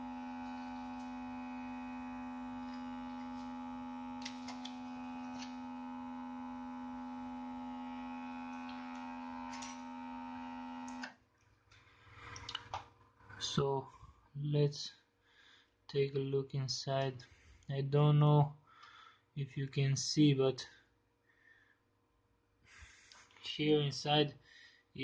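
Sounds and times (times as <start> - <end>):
hot-air tool humming: 0.0 - 11.2.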